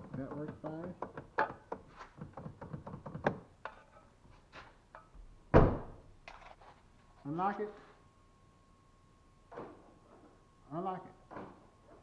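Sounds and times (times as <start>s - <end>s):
car door heavy thunk: 5.6s - 6.0s.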